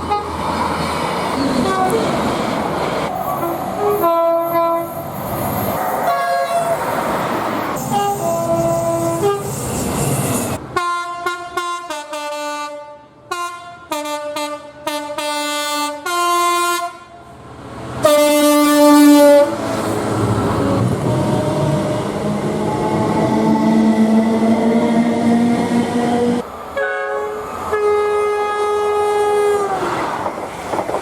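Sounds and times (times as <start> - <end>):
train horn toots and blast: 0.0 - 0.4, 1.5 - 2.0, 3.4 - 5.0, 6.1 - 6.8, 7.8 - 9.6, 10.8 - 17.3, 18.0 - 19.7, 23.5 - 29.8
train running noise: 0.0 - 10.8, 17.3 - 31.0.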